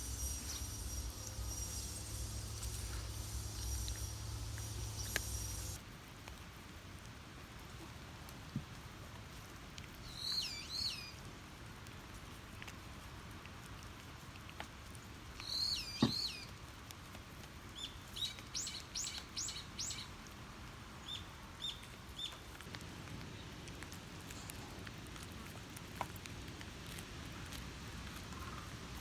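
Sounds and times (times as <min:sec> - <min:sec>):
small bird chirping: 0:00.0 - 0:05.8, 0:10.0 - 0:11.2, 0:15.4 - 0:16.5, 0:17.8 - 0:20.2, 0:21.0 - 0:22.5
faint steady hiss: 0:00.0 - 0:29.0.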